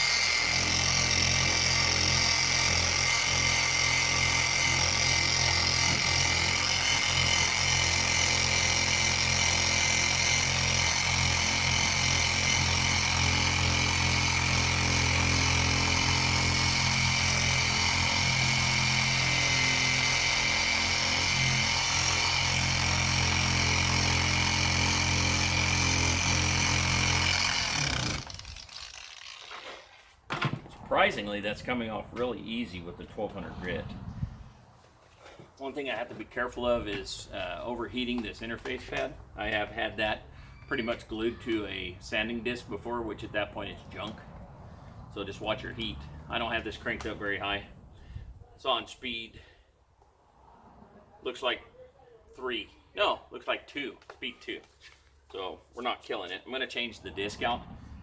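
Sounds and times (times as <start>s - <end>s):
electric polisher running: 0.0s - 29.6s.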